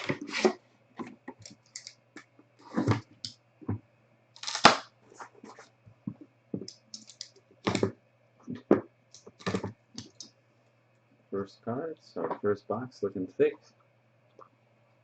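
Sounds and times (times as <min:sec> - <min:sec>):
cardboard and plastic wrapping rustling: 0:00.0 - 0:01.2.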